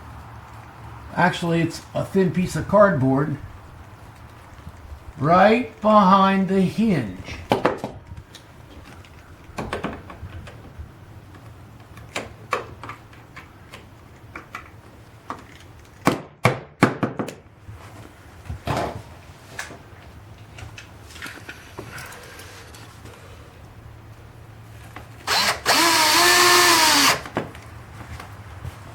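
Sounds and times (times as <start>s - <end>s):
knocks and taps on a door: 16.1s - 17.4s.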